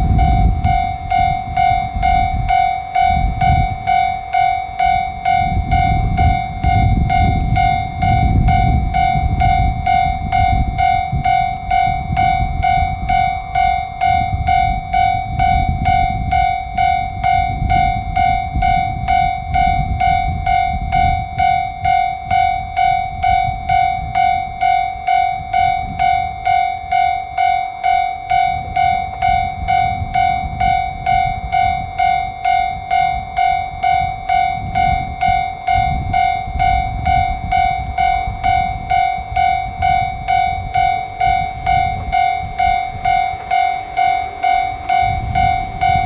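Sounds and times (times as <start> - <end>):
low rumble: 0.0 - 18.3, 36.0 - 46.0
level crossing warning bell: 0.0 - 46.0.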